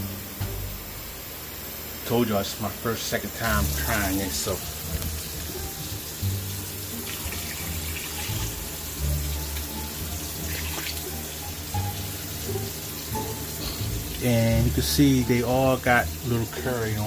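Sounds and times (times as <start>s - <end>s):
water running from a tap: 2.1s - 17.0s.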